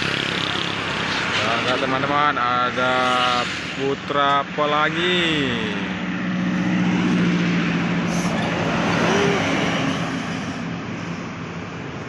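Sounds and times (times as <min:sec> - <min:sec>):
bus passing by: 0:00.0 - 0:12.0.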